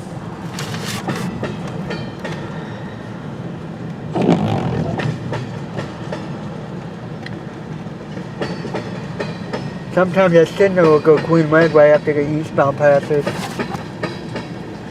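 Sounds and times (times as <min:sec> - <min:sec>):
loud train clank: 0:00.0 - 0:14.9
train wheels rumbling: 0:00.0 - 0:14.9
clicks over rail joints: 0:13.0 - 0:14.9.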